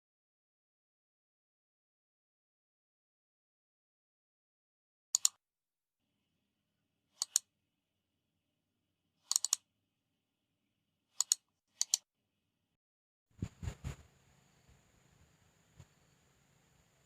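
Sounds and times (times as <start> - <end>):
sharp high clicks: 5.2 - 5.4, 7.2 - 7.5, 9.2 - 9.6, 11.2 - 12.0.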